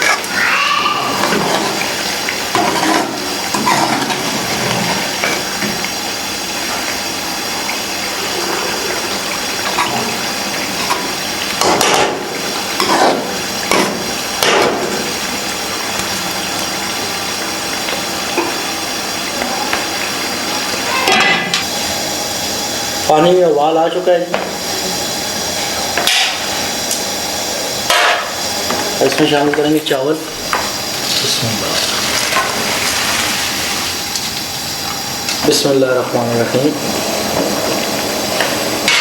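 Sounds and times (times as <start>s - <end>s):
water boiling in a pot: 0.0s - 39.0s.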